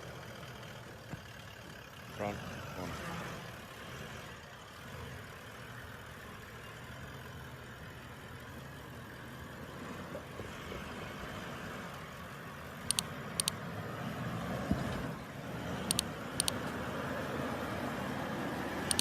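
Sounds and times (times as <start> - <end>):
engine running at low revs: 0.0 - 19.0
short high clicks: 12.9 - 13.5, 15.9 - 16.6.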